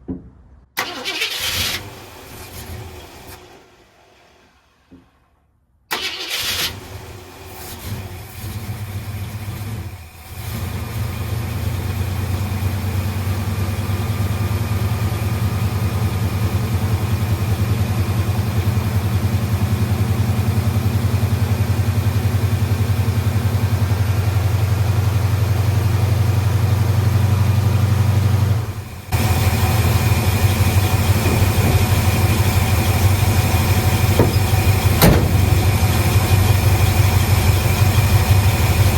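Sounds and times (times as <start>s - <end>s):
engine cranking and starting: 0.8s - 10.7s, 29.0s - 38.9s
engine running: 5.9s - 38.9s.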